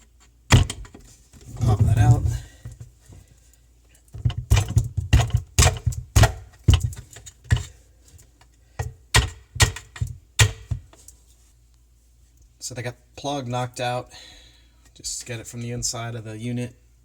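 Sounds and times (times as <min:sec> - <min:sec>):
screwdriver knocking on plastic plug: 0:04.2 - 0:07.7.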